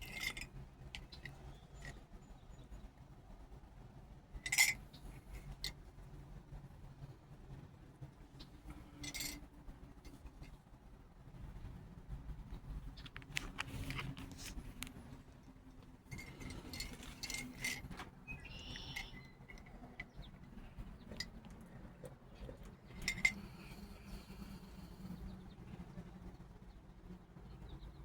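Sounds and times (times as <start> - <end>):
birds chirping faintly: 12.4 - 28.0.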